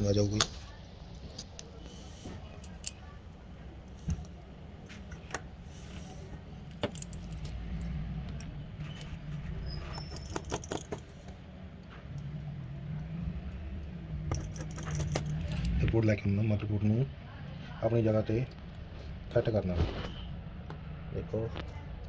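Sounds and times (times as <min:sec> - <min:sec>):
low steady hum: 0:00.0 - 0:22.0
small metal parts clicking: 0:06.7 - 0:11.3, 0:12.1 - 0:15.8.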